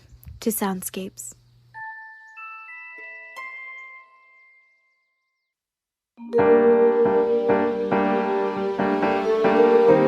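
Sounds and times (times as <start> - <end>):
keyboard music with chords: 1.8 - 4.9, 6.2 - 10.0.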